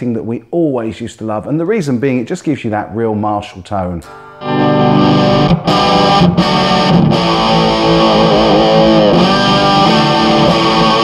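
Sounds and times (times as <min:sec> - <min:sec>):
electric guitar chords: 0:04.0 - 0:11.0.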